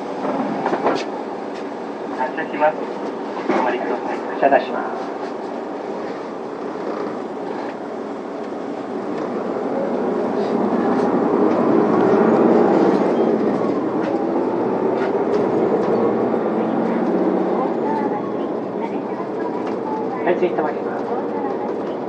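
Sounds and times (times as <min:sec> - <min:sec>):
bus diesel engine accelerating: 0:04.8 - 0:22.0.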